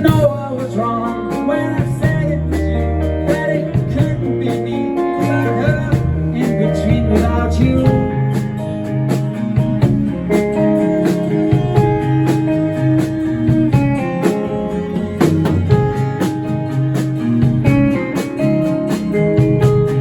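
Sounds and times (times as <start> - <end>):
live band playing: 0.0 - 20.0
sharp drum beats: 0.0 - 20.0.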